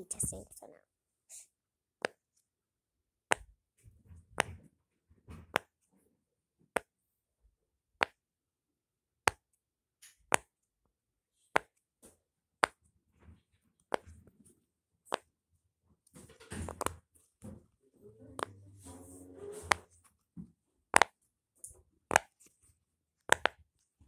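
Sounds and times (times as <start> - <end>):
fidget toy sharp pops: 23.3 - 23.6.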